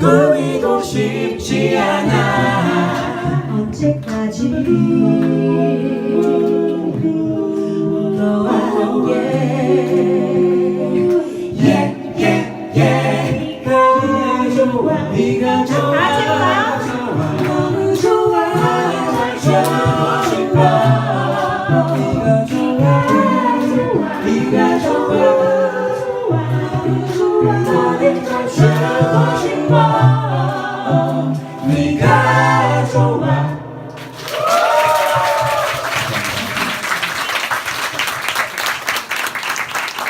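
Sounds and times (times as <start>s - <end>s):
a cappella group singing in harmony: 0.0s - 36.8s
audience applauding: 34.0s - 40.0s
audience cheering: 34.1s - 40.0s.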